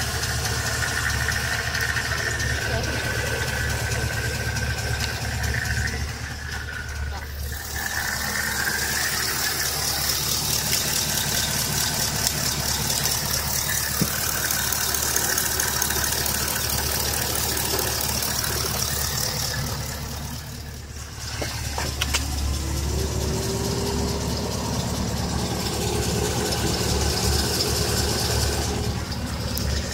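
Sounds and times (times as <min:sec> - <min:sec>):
car engine idling with tick: 0:00.0 - 0:29.9.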